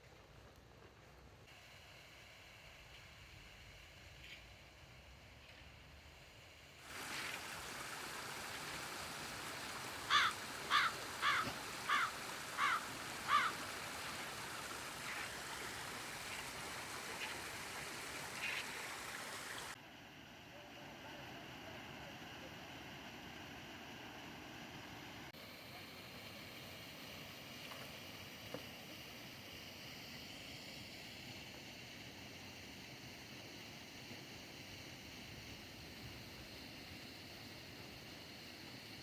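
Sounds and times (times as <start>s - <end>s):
faint hiss: 0.0s - 39.0s
stream water rushing: 6.8s - 19.8s.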